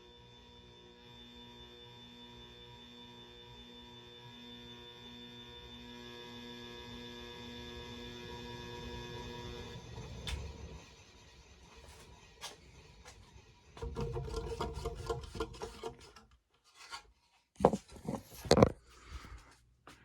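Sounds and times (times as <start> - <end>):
rubbing and knocking handling noise: 13.8 - 18.9.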